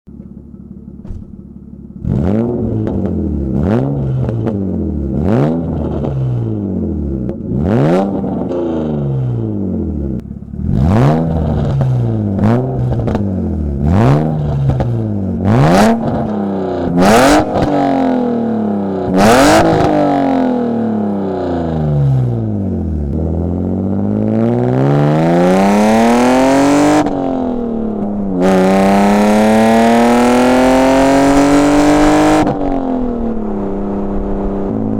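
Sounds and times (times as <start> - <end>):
sharp exhaust pops: 0.1 - 1.7
car engine idling and revving: 0.1 - 34.9.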